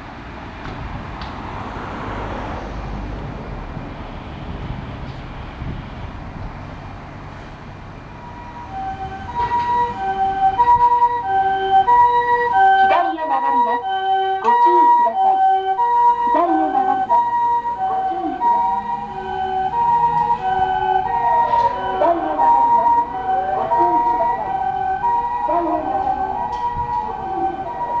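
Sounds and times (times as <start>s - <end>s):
two-tone ambulance siren: 8.2s - 28.0s.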